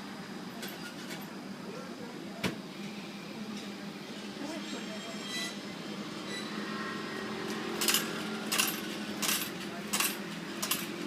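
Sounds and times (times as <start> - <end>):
vending machine low hum: 5.5 - 11.0
coins clinking into coin slot: 7.5 - 11.0.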